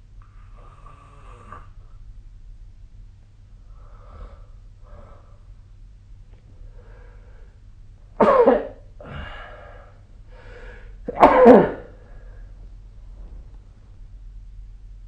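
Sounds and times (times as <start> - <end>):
quiet breathing: 0.0 - 2.2, 3.5 - 5.8, 6.4 - 7.9, 9.0 - 11.1, 11.9 - 13.7
person snoring: 0.3 - 1.9.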